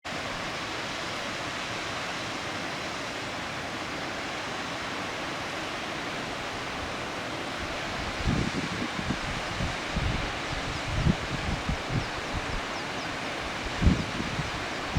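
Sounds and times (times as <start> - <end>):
waterfall roaring: 0.1 - 14.9
wind buffeting microphone: 7.6 - 12.8, 13.4 - 14.9.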